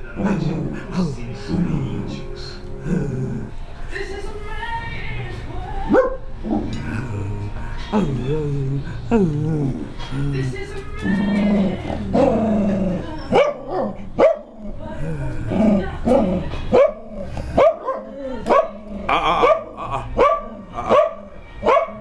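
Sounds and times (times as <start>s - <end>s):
dog barking: 5.9s - 6.3s, 13.3s - 14.6s, 16.7s - 18.8s, 19.4s - 22.0s.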